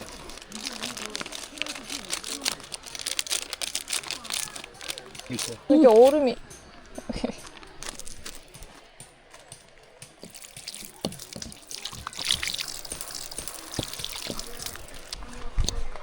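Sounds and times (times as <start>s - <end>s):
liquid pouring and trickling: 10.2s - 15.8s.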